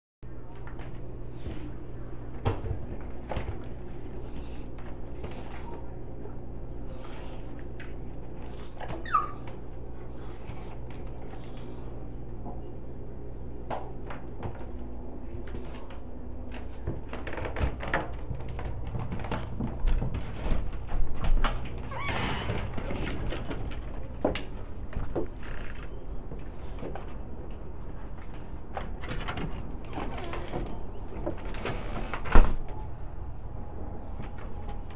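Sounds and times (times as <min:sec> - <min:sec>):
dog whining: 0:06.8 - 0:07.6, 0:08.4 - 0:11.8, 0:21.8 - 0:22.8, 0:29.7 - 0:31.0.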